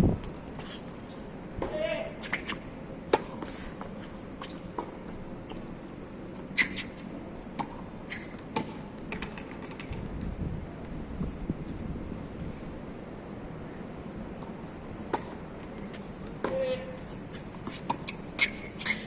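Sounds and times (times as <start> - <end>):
wind rumble on microphone: 0.0 - 0.5, 9.8 - 13.0.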